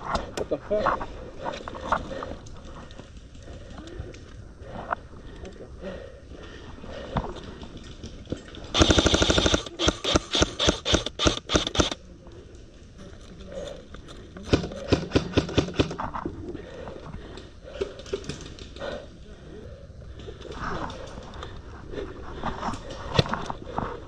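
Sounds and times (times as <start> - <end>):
airsoft guns firing: 8.8 - 12.0, 14.5 - 16.0.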